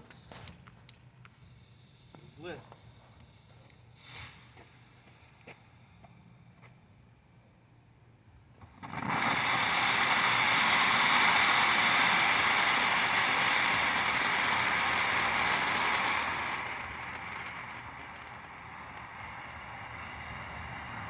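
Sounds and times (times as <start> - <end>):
firework fountain hissing: 3.8 - 6.0, 8.1 - 19.7.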